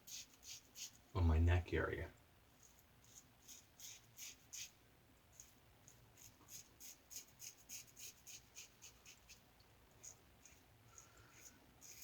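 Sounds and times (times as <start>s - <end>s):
razor scraping stubble: 0.0s - 1.0s, 2.6s - 4.8s, 10.0s - 12.0s.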